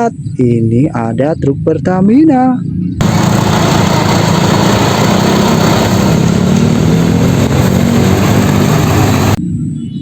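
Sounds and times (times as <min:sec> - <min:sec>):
vehicle engine running rough: 0:03.0 - 0:09.4.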